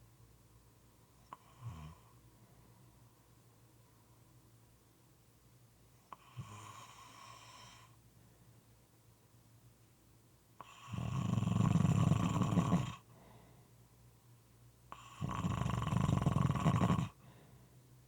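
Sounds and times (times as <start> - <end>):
moist snoring: 10.6 - 13.0, 14.9 - 17.2.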